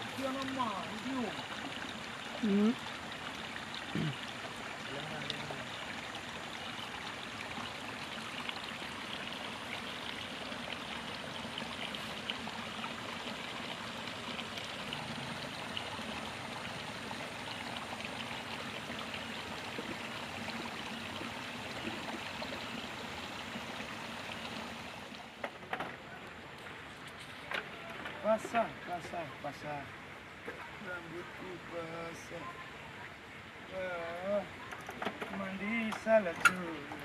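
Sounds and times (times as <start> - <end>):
water flowing in a ditch: 0.0 - 37.0.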